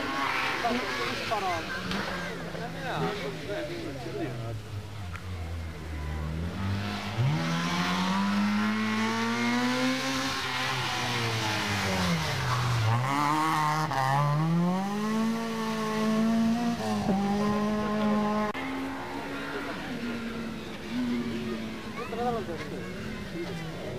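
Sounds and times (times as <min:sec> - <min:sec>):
rally car engine revving: 0:05.4 - 0:23.6.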